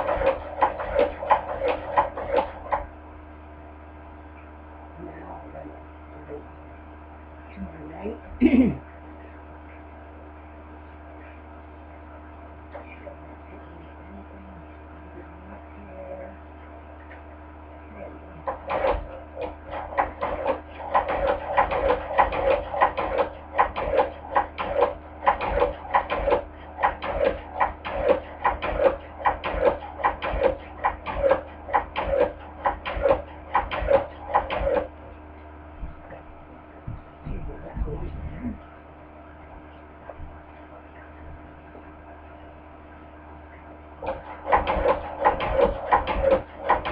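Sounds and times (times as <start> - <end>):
sewing machine clacking: 0.0 - 2.9, 18.5 - 35.0, 44.0 - 46.9
low electrical hum: 0.0 - 46.9.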